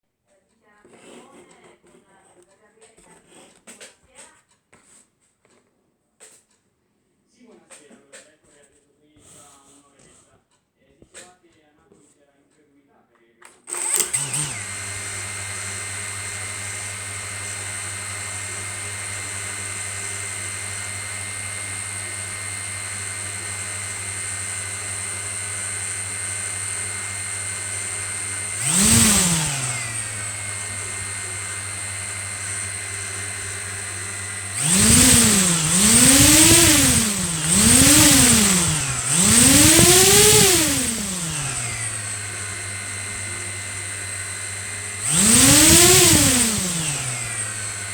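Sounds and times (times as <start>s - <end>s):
drone motors humming and revving: 13.9s - 47.9s.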